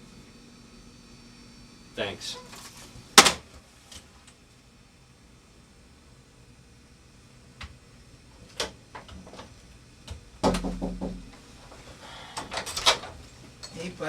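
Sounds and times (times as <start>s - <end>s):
sharp clicks and knocks: 10.1s - 11.4s
heavy thump: 10.4s - 11.4s.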